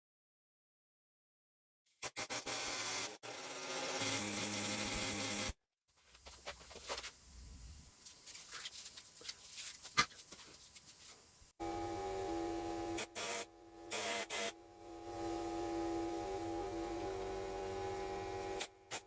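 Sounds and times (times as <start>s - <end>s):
pneumatic air hammer buzzing: 11.6s - 19.0s.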